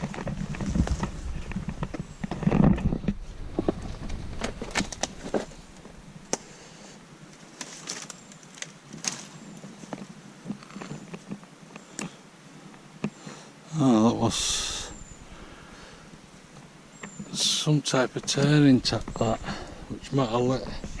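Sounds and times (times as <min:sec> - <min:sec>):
twigs crackling and snapping: 0:00.0 - 0:06.5, 0:07.3 - 0:13.2, 0:16.5 - 0:21.0
footsteps through undergrowth: 0:07.4 - 0:11.4.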